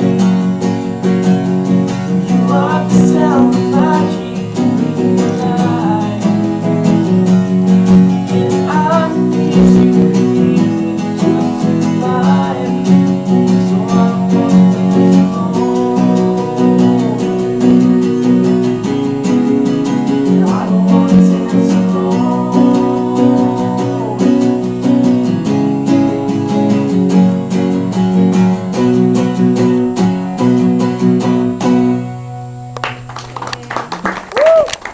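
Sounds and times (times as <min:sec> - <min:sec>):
strummed guitar: 0:00.0 - 0:34.9
person singing: 0:02.0 - 0:25.2.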